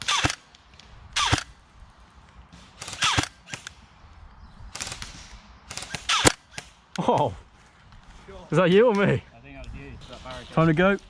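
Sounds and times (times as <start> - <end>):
airsoft gun shots: 0.0 - 0.4, 1.2 - 1.5, 2.5 - 3.8, 4.7 - 6.8.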